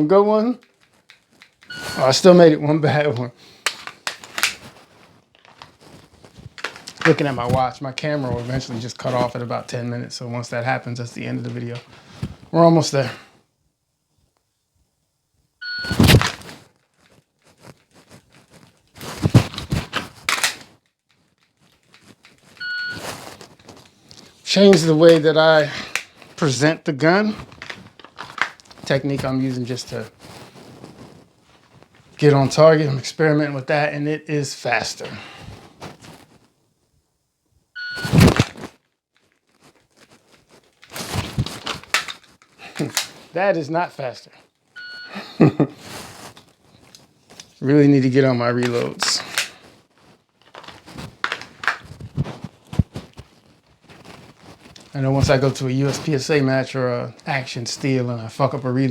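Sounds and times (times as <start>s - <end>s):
gun handling noise: 0.6s - 1.8s, 3.4s - 5.8s, 6.5s - 7.5s, 15.9s - 16.5s, 19.0s - 20.8s, 23.0s - 26.2s, 27.4s - 28.8s, 40.8s - 43.3s, 48.6s - 49.6s, 50.4s - 51.9s
pistol drawn from holster: 3.4s - 4.9s, 15.9s - 16.6s, 19.0s - 20.8s, 38.0s - 38.7s, 40.8s - 43.3s, 48.6s - 49.6s.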